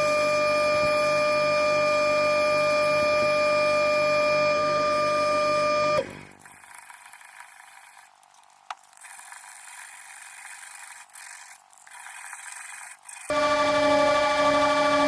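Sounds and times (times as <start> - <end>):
machine whining: 0.0 - 6.3, 13.2 - 15.0.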